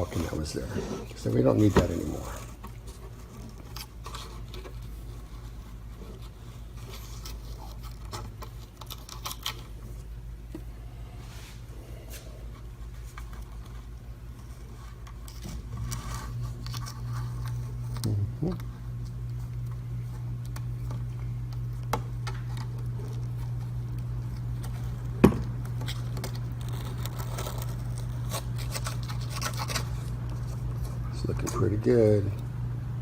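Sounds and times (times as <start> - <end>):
steady low hum: 0.0 - 33.0
razor blade scraping caulking: 25.8 - 31.0.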